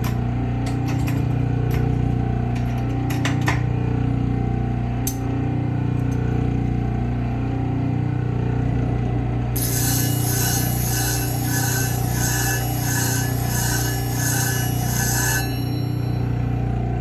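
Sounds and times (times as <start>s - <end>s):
electric motor hum: 9.6s - 16.6s.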